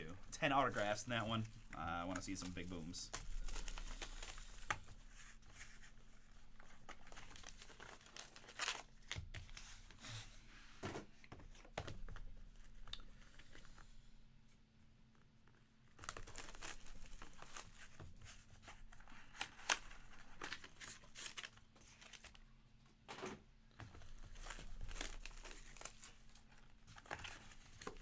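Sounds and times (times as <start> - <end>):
packaging crinkling and tearing: 0.5 - 4.8, 6.6 - 9.6, 15.9 - 18.0, 18.8 - 22.4, 24.0 - 28.0.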